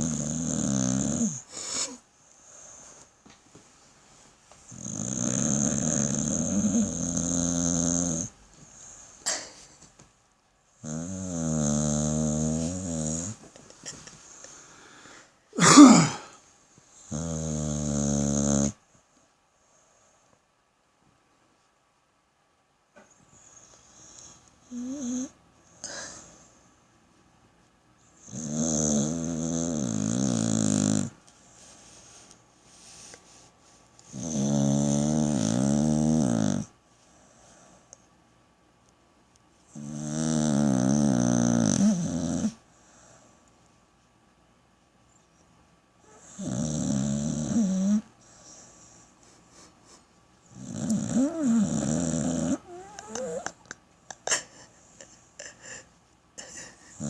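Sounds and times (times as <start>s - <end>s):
dog snoring: 0.0s - 3.0s, 4.7s - 8.4s, 10.8s - 13.4s, 17.0s - 18.8s, 23.4s - 26.5s, 28.1s - 31.2s, 34.0s - 36.8s, 39.7s - 42.6s, 46.0s - 48.8s, 50.4s - 53.6s.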